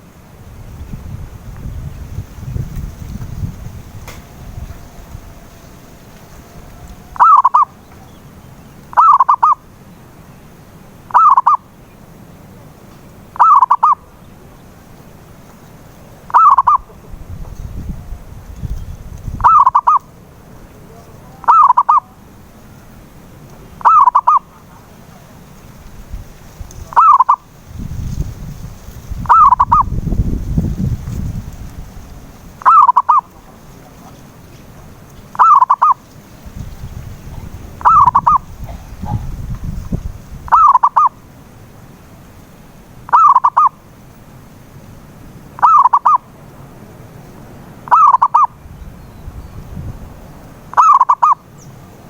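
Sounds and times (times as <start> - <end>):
dove cooing: 6.4 - 8.3, 8.9 - 9.6, 11.1 - 11.6, 13.4 - 14.1, 16.3 - 17.2, 19.4 - 20.1, 20.8 - 22.2, 23.7 - 25.3, 26.8 - 27.5, 29.2 - 30.0, 32.6 - 36.0, 37.2 - 39.6, 40.5 - 41.2, 43.1 - 43.8, 45.6 - 46.3, 47.9 - 48.6, 50.7 - 51.4.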